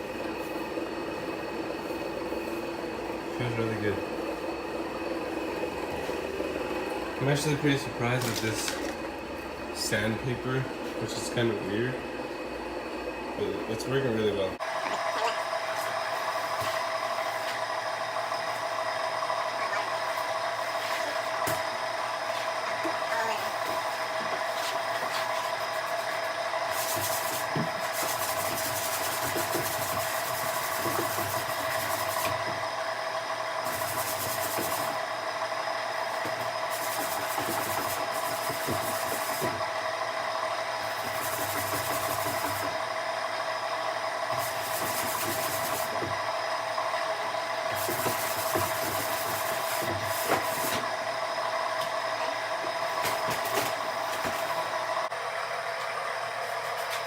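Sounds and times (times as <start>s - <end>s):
sandpaper sanding strokes: 26.7s - 32.2s, 36.7s - 39.6s.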